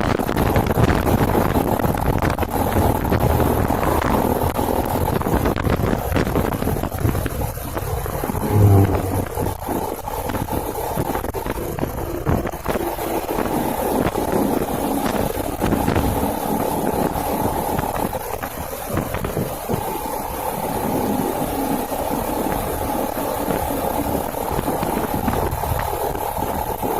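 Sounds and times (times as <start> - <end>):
wind buffeting microphone: 0.0 - 26.9
small motorcycle engine running: 7.9 - 9.8.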